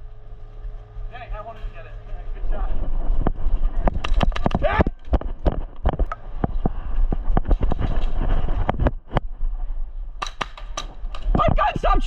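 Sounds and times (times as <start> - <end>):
wind rumble on microphone: 0.0 - 10.2
sharp clicks and knocks: 3.2 - 9.3, 10.2 - 11.5.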